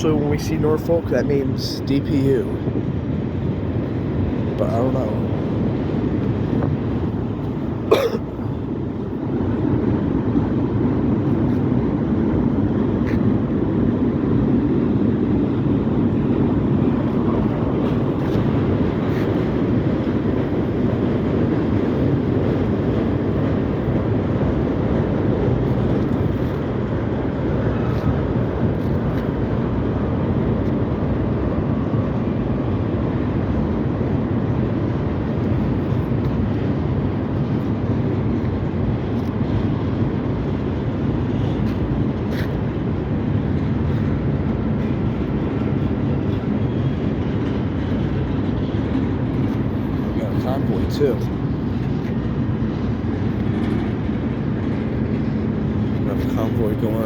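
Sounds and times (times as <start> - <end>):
freight train wheels rumbling: 0.0 - 57.0.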